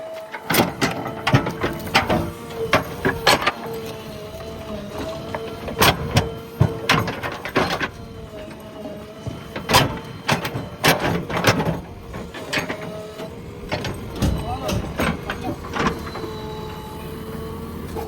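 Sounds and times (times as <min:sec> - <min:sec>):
backhoe whine: 0:00.0 - 0:18.0
sharp knocks and clanks: 0:00.4 - 0:03.8, 0:04.9 - 0:08.0, 0:09.1 - 0:16.9.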